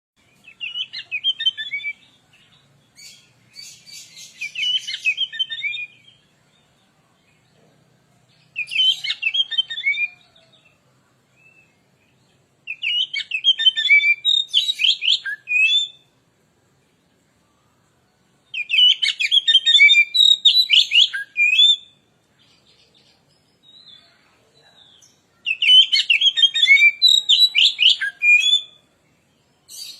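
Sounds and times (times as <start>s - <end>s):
bird singing whistled phrases: 0.4s - 2.1s, 3.0s - 6.2s, 8.6s - 10.3s, 12.7s - 16.0s, 18.6s - 22.0s, 25.4s - 28.8s.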